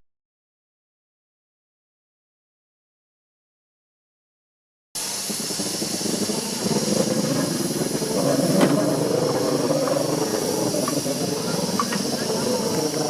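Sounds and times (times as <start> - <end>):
steam locomotive hissing: 5.0 - 13.0.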